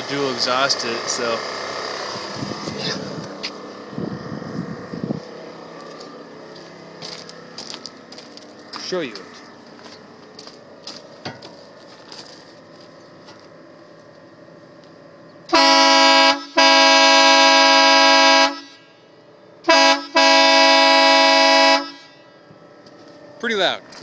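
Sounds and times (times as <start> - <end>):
air train horn blasts: 15.5 - 19.0, 19.6 - 22.4.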